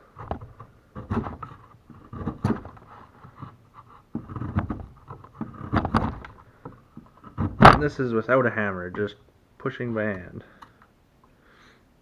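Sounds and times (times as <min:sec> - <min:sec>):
chisel paring wood: 0:00.1 - 0:08.0.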